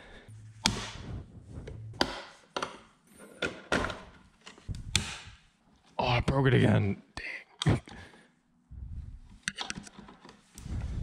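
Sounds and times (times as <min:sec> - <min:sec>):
low hum: 0:00.0 - 0:02.5, 0:04.7 - 0:05.4, 0:08.7 - 0:09.3.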